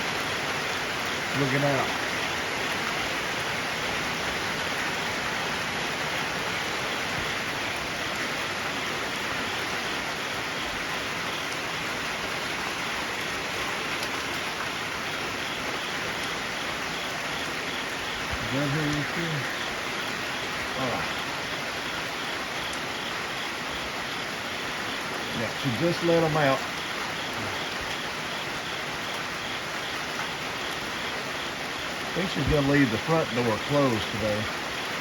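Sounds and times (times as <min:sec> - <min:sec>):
heavy rain: 0:00.0 - 0:35.0.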